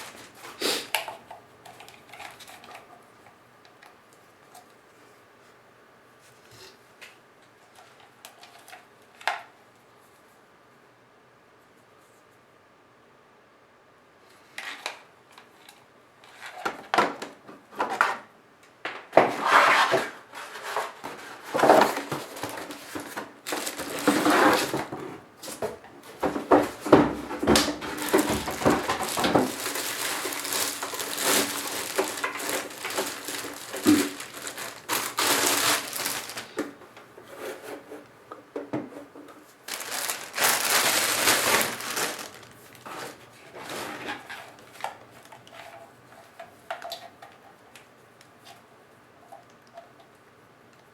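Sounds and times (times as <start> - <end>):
packaging crinkling and rustling: 20.6 - 36.8, 39.5 - 47.0.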